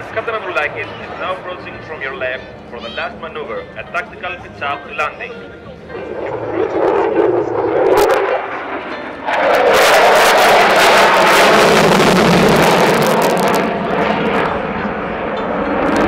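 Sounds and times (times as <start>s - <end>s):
fighter jet passing low: 5.9s - 16.0s.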